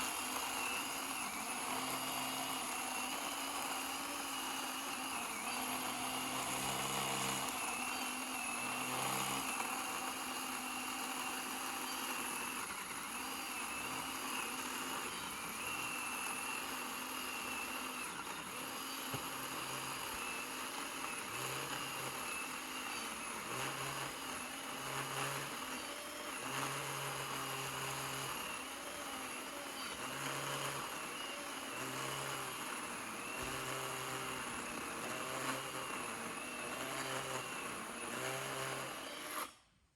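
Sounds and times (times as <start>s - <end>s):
chain rasping through wood: 0.0s - 12.4s
electric chainsaw motor whine: 0.0s - 39.8s.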